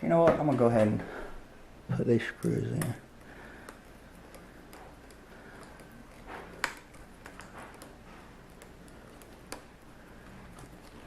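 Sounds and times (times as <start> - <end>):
screwdriver clicking on plastic: 3.6 - 9.9.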